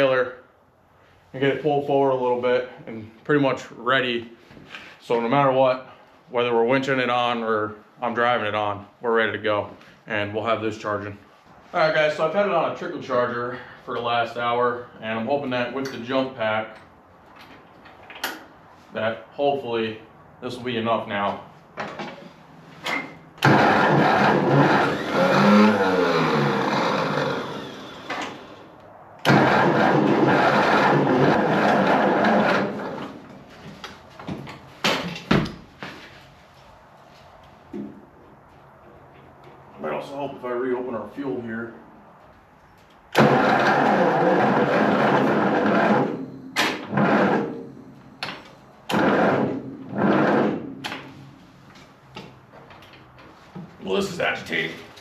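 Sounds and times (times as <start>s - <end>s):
tractor engine cranking: 22.9s - 33.4s, 43.1s - 51.2s
starter motor click: 23.4s - 28.5s, 29.2s - 33.2s, 43.2s - 47.4s.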